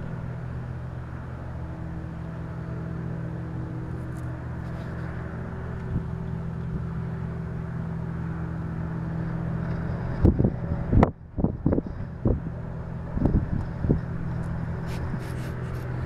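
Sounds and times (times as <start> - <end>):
low industrial hum: 0.0 - 16.0
steady rushing noise: 0.0 - 16.0.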